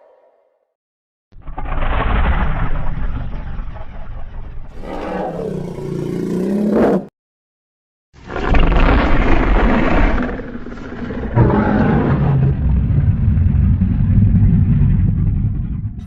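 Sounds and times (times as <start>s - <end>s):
monster roar: 4.7s - 7.1s, 11.0s - 13.5s.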